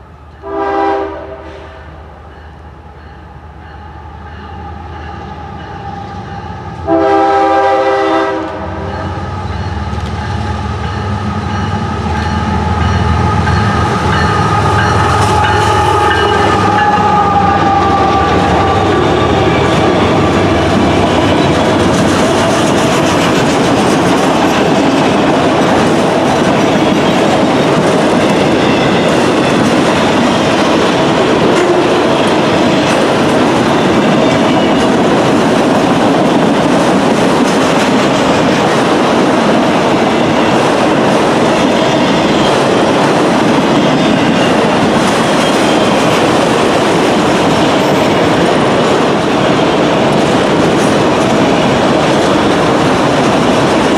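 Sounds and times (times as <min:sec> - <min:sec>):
freight train rumbling past: 0:00.0 - 0:53.9
wheels clacking over rail joints: 0:09.9 - 0:53.9.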